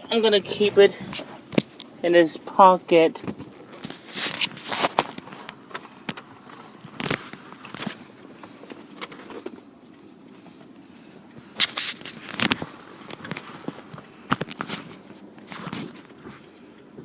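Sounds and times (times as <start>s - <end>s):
low background noise: 0.0s - 17.0s
rustling: 3.2s - 16.7s
clicks and knocks of handling things: 3.2s - 17.0s.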